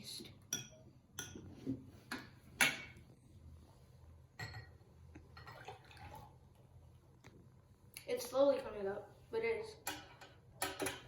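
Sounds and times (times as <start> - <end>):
liquid pouring: 5.3 - 6.6.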